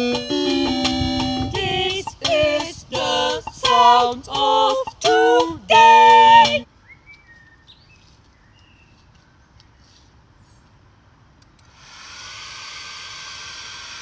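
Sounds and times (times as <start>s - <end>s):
women singing held notes: 1.5s - 6.7s.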